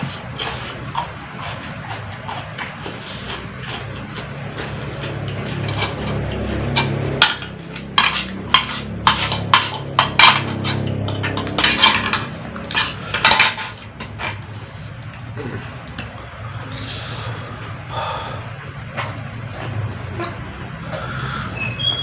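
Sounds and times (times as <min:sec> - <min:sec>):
cutlery clinking on a plate: 0:06.8 - 0:14.4.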